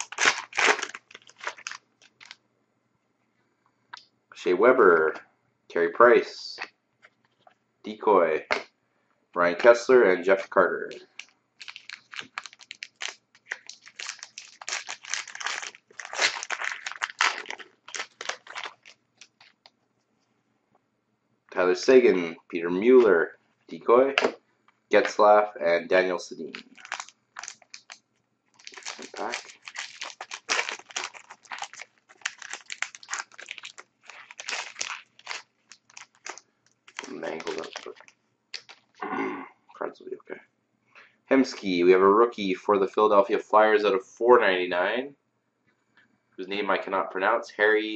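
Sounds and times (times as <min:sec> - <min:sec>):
card pack wrapper crinkling: 0:00.0 - 0:02.4, 0:10.5 - 0:19.7, 0:26.4 - 0:28.0, 0:28.6 - 0:39.0.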